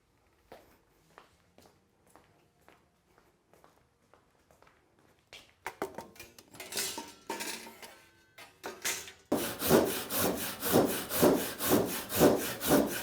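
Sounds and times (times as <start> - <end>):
handsaw cutting timber: 9.3 - 13.0.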